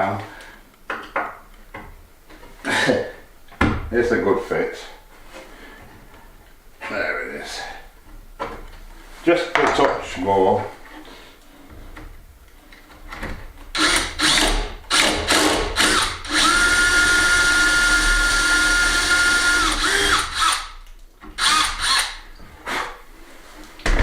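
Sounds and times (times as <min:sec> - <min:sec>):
power drill whining: 0:13.7 - 0:22.3.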